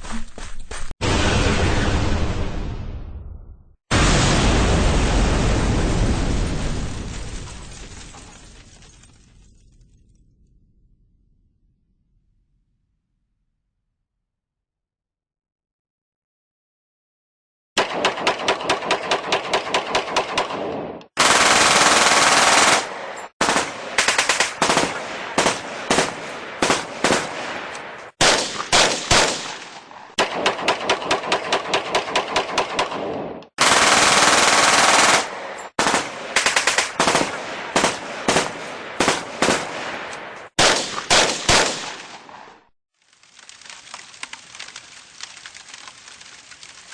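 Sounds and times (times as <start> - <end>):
machine-gun bursts: 21.2 - 27.4, 33.6 - 39.6
single rifle shots: 22.6 - 33.8, 35.1 - 42.6.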